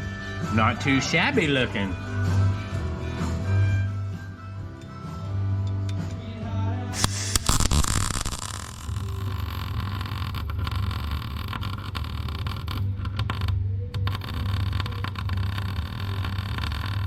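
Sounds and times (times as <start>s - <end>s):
welder arc crackling: 7.0s - 17.0s.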